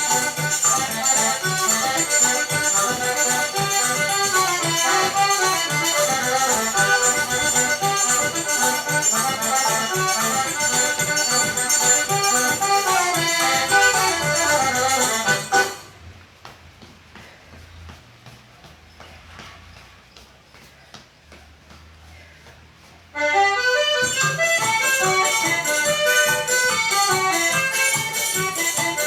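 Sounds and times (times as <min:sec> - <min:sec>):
shaker and hand percussion: 0:00.0 - 0:15.6
accordion melody: 0:00.0 - 0:16.0, 0:23.2 - 0:29.0.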